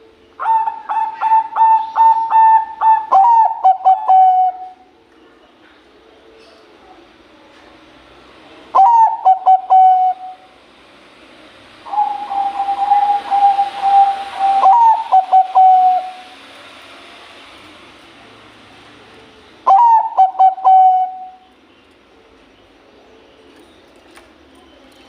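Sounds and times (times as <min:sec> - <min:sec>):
dove cooing: 0:00.4 - 0:04.8, 0:08.7 - 0:10.4, 0:11.9 - 0:16.2, 0:19.6 - 0:21.5.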